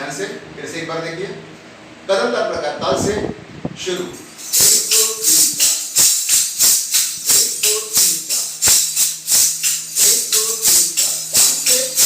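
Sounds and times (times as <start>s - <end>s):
jingles clashing rhythmically: 4.2s - 12.0s
music with short pitched notes: 4.2s - 12.0s.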